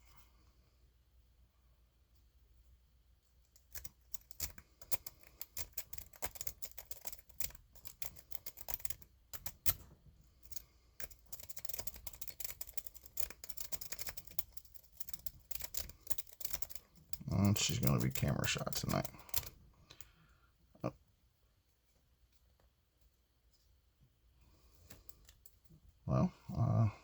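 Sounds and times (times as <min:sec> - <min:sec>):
lock pick rake clicking on pins: 0:03.5 - 0:09.8, 0:10.4 - 0:20.0.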